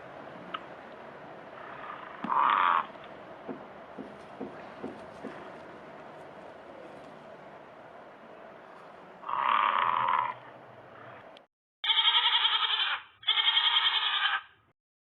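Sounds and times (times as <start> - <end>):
animal calling: 1.5 - 7.1, 8.7 - 14.6.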